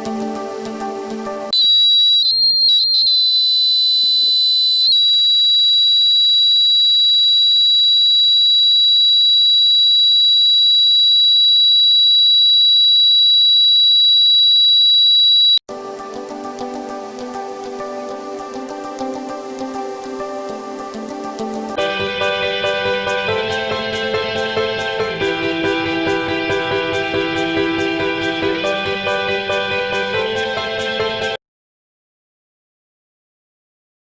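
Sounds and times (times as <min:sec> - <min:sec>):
fire alarm buzzer tone: 0:01.5 - 0:15.6, 0:21.8 - 0:29.2.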